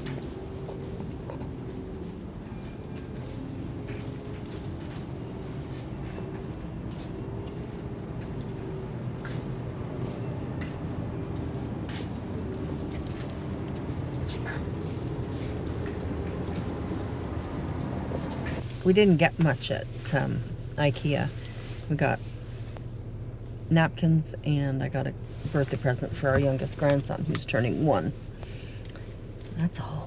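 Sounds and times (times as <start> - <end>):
car driving rumble: 0.0 - 30.0.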